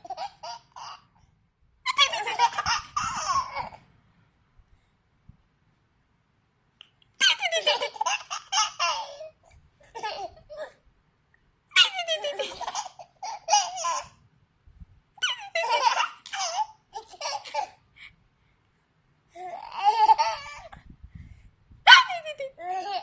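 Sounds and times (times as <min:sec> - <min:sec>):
baby laughing: 0:00.0 - 0:01.1, 0:01.9 - 0:03.8, 0:07.2 - 0:10.8, 0:11.7 - 0:14.2, 0:15.2 - 0:17.8, 0:19.4 - 0:20.8, 0:22.6 - 0:23.0.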